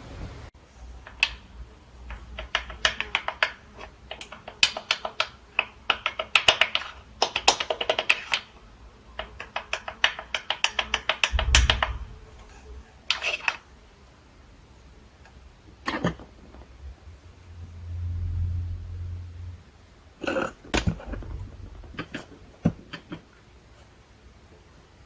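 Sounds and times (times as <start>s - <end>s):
low thump: 11.3s - 12.4s, 20.7s - 22.0s.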